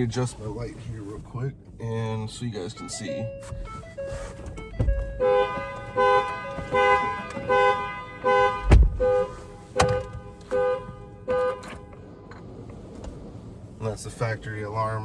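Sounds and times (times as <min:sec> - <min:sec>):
car alarm horn honking: 0:02.7 - 0:12.0.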